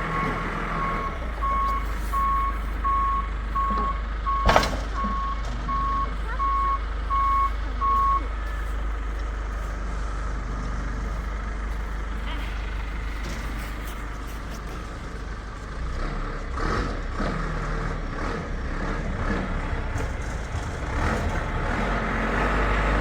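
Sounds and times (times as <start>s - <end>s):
truck reversing alarm beeping: 0.0s - 13.8s
low truck engine rumble: 0.0s - 23.0s
loud clunk: 3.8s - 5.6s.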